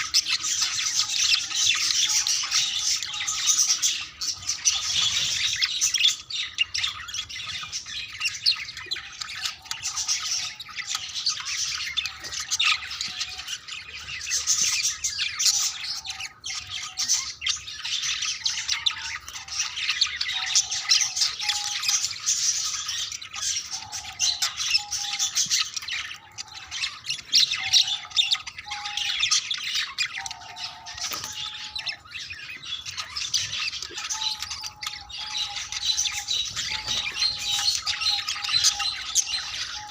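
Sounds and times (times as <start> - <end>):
budgerigars chattering and warbling: 0.0 - 39.9.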